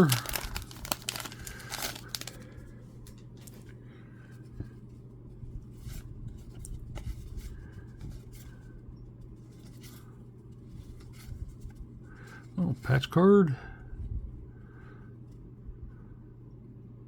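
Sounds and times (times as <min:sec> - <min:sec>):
trading cards scraping: 0:00.0 - 0:02.5
low steady hum: 0:00.0 - 0:17.0.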